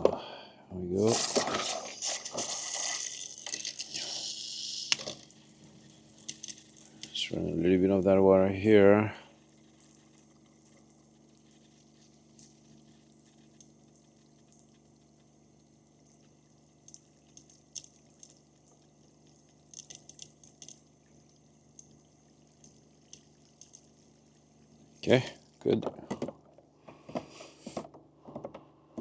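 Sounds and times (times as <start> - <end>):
steady low hum: 0.0 - 29.0
water running and dripping: 8.6 - 25.7.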